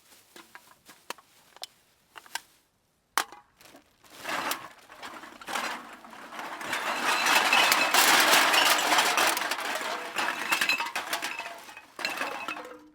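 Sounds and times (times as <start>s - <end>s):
cans clattering: 4.2s - 12.9s.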